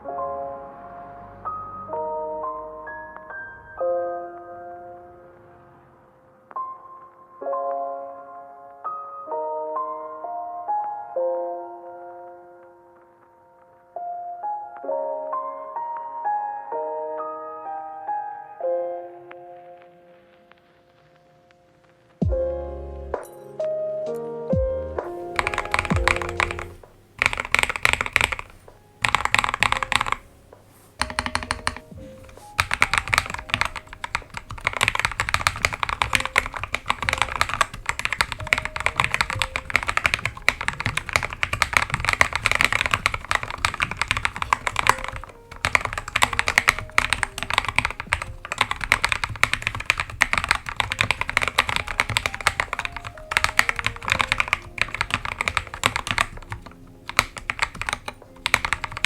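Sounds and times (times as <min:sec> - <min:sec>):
mechanical keyboard typing: 0:25.0 - 0:30.3, 0:31.0 - 0:59.0.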